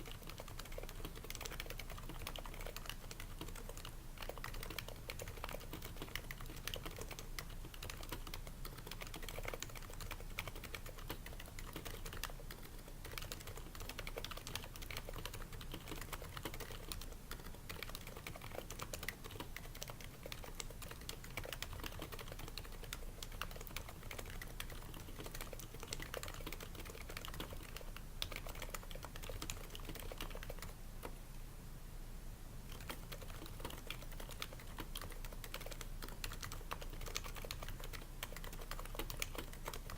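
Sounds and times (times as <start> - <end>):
soft keyboard typing: 0.0 - 31.2, 32.7 - 39.9.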